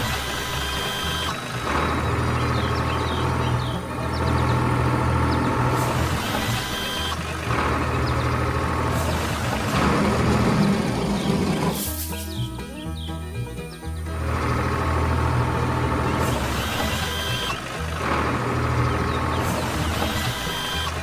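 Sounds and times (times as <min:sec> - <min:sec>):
truck engine running: 0:00.0 - 0:21.0
air hiss bursts: 0:11.8 - 0:12.4.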